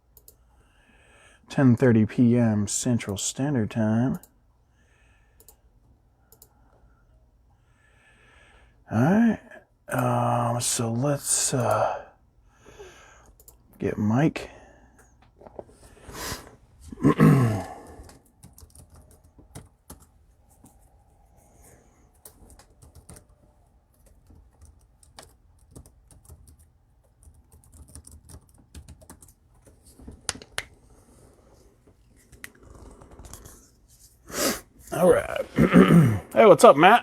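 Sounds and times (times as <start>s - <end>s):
man's short vocal sound: 16.9s - 18.0s, 34.4s - 37.0s
typing on a keyboard: 18.0s - 20.8s, 22.1s - 30.7s, 32.3s - 33.6s.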